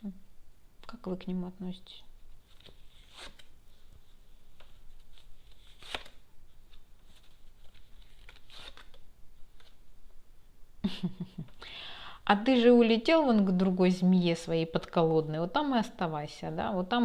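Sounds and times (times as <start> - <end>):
cards rustling: 2.4 - 9.8.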